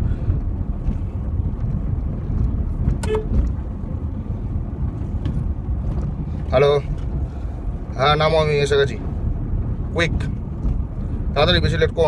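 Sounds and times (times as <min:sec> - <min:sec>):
car engine rumble inside cabin: 0:00.0 - 0:12.0
car horn toot: 0:03.0 - 0:03.4.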